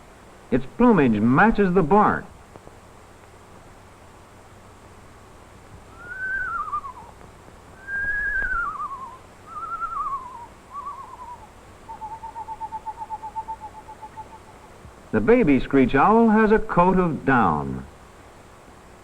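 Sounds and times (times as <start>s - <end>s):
screech owl trill: 5.9s - 7.2s, 7.8s - 14.7s
screech owl whinnies: 5.9s - 7.2s, 7.8s - 14.6s.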